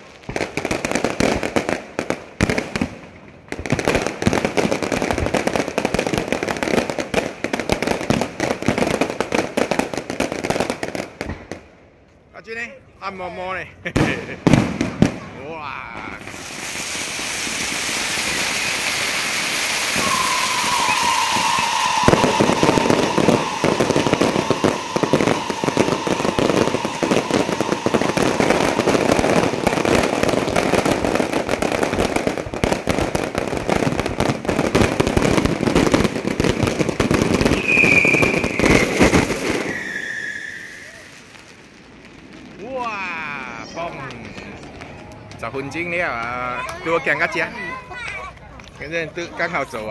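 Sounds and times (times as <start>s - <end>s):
fireworks bangs and crackling: 0.0s - 49.9s
fireworks whistling: 13.8s - 47.6s.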